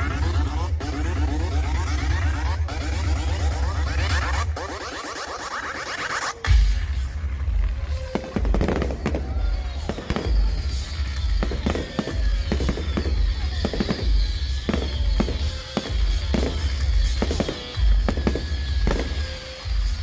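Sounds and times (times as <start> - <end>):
show music: 0.0 - 20.0
fireworks bangs and booms: 6.5 - 20.0.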